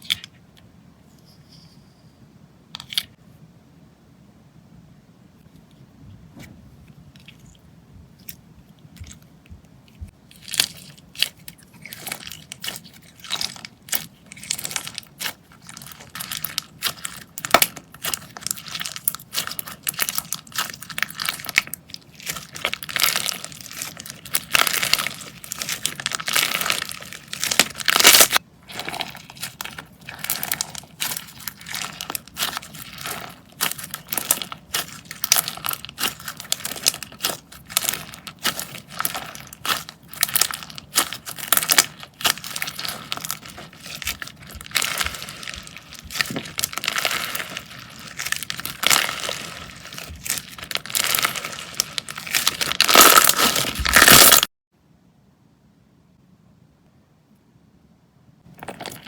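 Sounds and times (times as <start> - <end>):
slime crackling and popping: 10.3 - 54.5.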